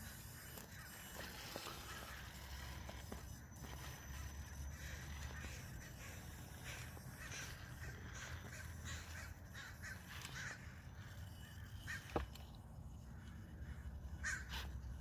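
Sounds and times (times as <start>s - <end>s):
birds harsh calls: 0.0s - 15.0s.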